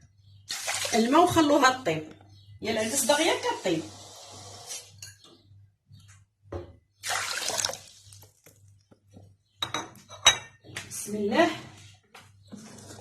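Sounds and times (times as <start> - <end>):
water pouring into pot: 0.5 - 1.1, 7.0 - 8.3.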